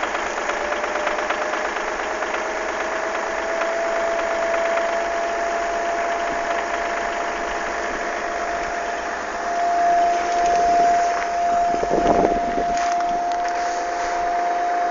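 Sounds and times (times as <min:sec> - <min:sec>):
diesel engine whining: 0:00.0 - 0:14.9
engine ticking clatter: 0:00.0 - 0:14.9.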